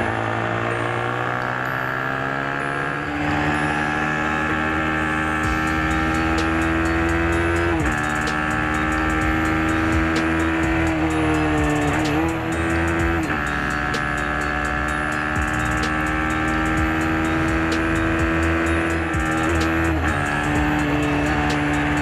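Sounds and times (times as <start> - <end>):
motorcycle engine at high revs: 0.0 - 22.0
motorcycle gear change: 0.0 - 22.0.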